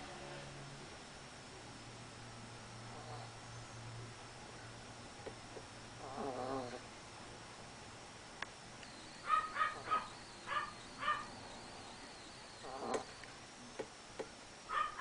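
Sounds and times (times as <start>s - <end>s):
dog whining: 6.0s - 6.9s, 9.2s - 11.3s, 12.6s - 13.1s.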